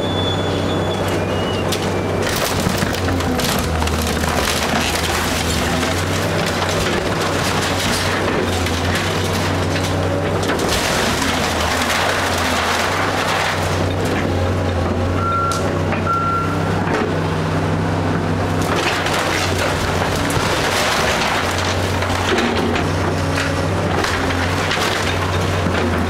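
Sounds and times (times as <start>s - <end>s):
heavy diesel machinery running: 0.0s - 26.0s
debris being worked: 1.7s - 15.2s, 18.5s - 26.0s
backup alarm beeps: 15.2s - 16.6s.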